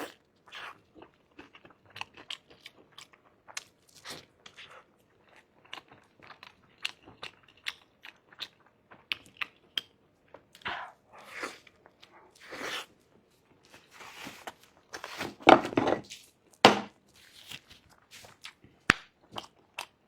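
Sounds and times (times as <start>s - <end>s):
person biting and chewing food: 17.1s - 20.0s.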